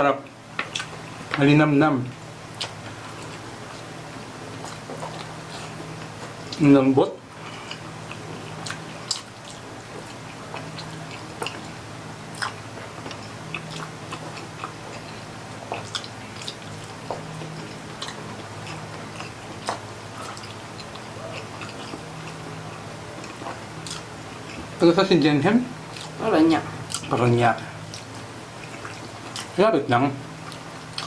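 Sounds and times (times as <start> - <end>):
steady low hum: 0.0 - 31.0
chewing ribs with wet smacks: 0.5 - 1.4, 2.5 - 6.6, 7.5 - 24.8, 25.8 - 29.6, 30.4 - 31.0.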